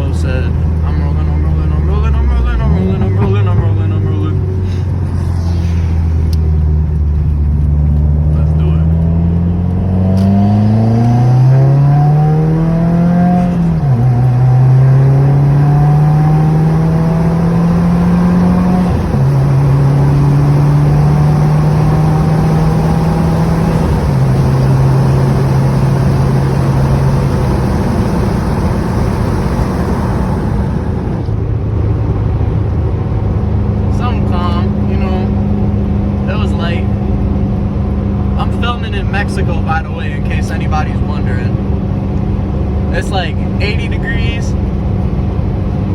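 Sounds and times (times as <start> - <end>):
car engine accelerating through gears: 0.0 - 45.9
road noise: 0.0 - 45.9
wind noise: 2.8 - 8.3.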